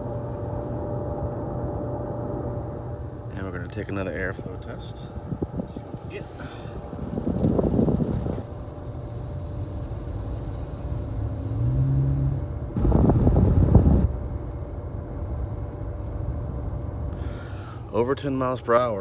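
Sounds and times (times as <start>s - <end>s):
low steady rumble: 0.0s - 19.0s
air gusts buffeting microphone: 1.0s - 18.0s.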